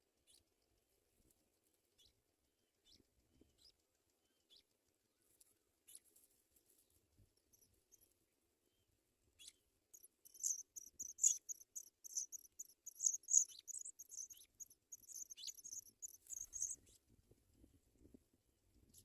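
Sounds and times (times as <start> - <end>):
nestlings cheeping: 10.0 - 16.8.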